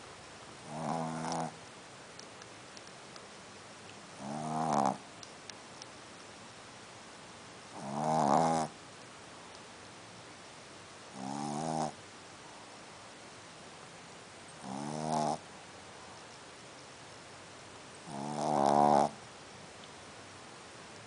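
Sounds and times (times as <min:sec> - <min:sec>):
dog snoring: 0:00.6 - 0:01.6, 0:04.2 - 0:05.0, 0:07.7 - 0:08.8, 0:11.1 - 0:12.0, 0:14.6 - 0:15.4, 0:18.0 - 0:19.2.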